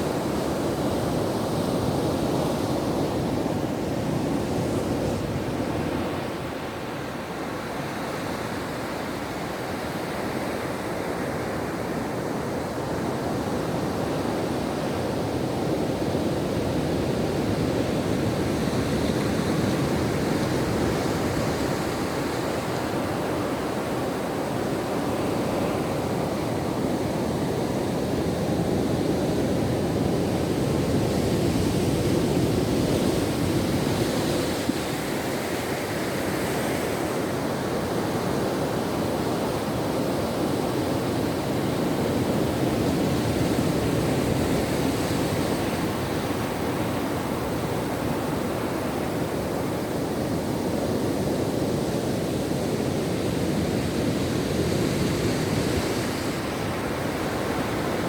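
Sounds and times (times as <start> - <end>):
ocean waves on shore: 0.0 - 58.0.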